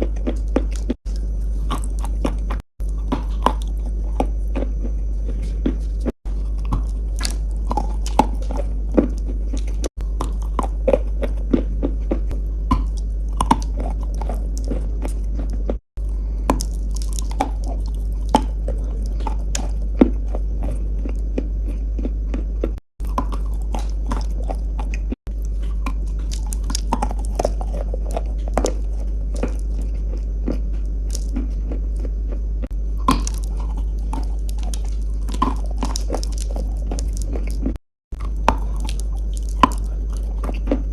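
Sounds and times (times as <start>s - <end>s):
crunchy chewing: 0.0s - 40.9s
steady low hum: 0.0s - 40.9s.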